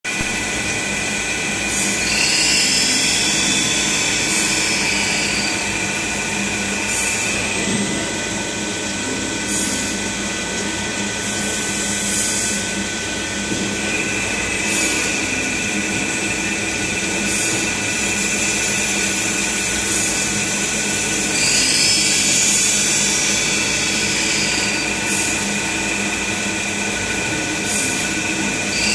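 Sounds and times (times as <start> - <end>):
grinding machine high whine: 0.1 - 28.9
hissing grinding surge: 1.7 - 7.5.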